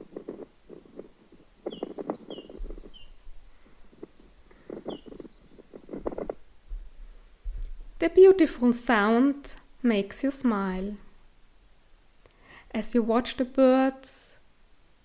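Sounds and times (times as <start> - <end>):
songbirds chirping: 0.0 - 6.7
low crackling noise: 0.0 - 13.7.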